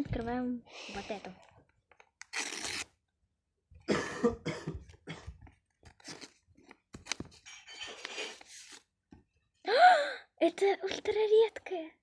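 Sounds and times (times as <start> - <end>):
paper crinkling and rustling: 1.9 - 2.9, 5.8 - 8.9.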